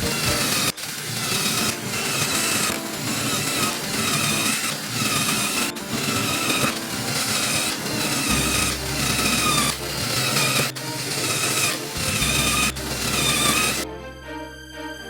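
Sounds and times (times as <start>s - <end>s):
scraping strokes on wood: 0.0s - 13.8s.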